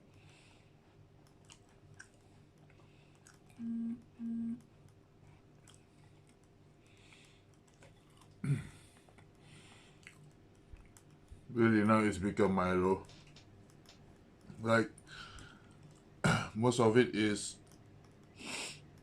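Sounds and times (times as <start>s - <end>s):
person chewing: 1.2s - 3.7s, 4.9s - 11.2s
person humming mm: 3.6s - 4.6s.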